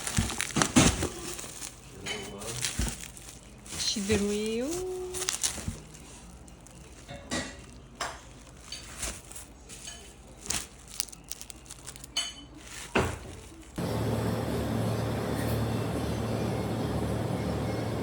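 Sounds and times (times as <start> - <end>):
dishes and cutlery clinking: 2.0 - 3.1, 6.8 - 13.8
low rumble with hum: 13.5 - 18.0.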